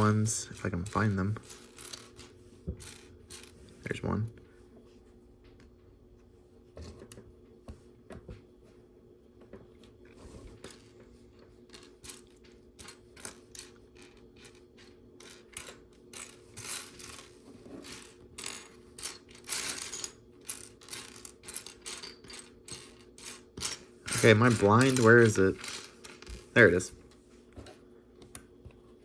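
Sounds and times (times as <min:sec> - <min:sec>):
plastic pieces clattering: 0:15.2 - 0:26.9.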